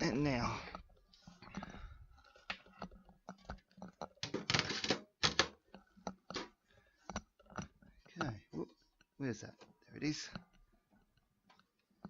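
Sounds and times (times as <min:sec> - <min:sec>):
computer hardware clicks and knocks: 0:01.5 - 0:08.4.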